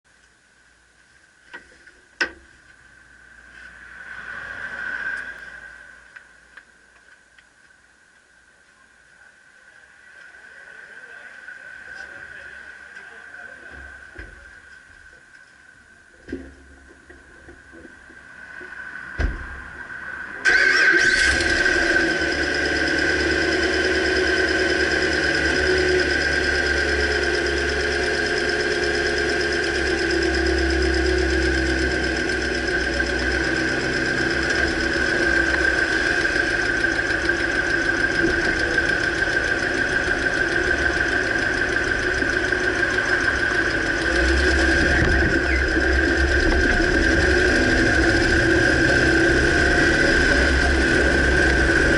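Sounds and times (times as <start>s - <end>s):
constant high engine whine: 0.1s - 51.9s
pickup engine starting and idling: 20.4s - 51.9s.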